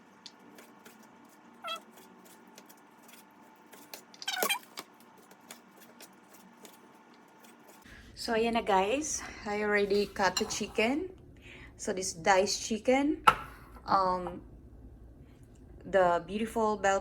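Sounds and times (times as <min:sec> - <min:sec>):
cat meowing: 0:01.6 - 0:01.9.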